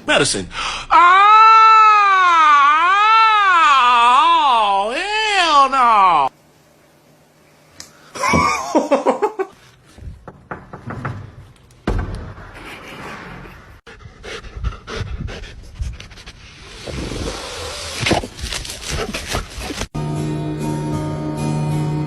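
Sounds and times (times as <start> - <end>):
dog panting: 13.9 - 16.4.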